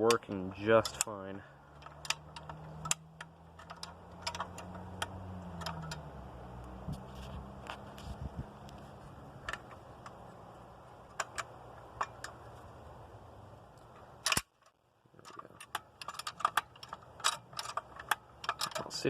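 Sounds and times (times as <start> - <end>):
car jack metallic clicks: 0.0 - 7.9, 13.8 - 19.0.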